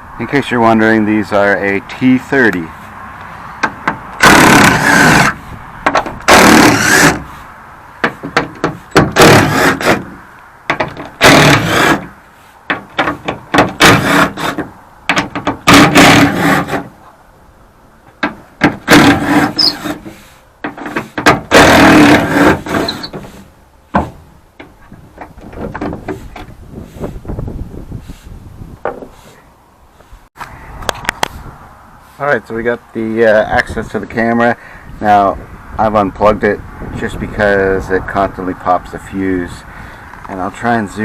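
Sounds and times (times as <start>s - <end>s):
tool loosening metal bolts: 10.7s - 12.1s, 18.8s - 20.1s, 20.7s - 23.4s.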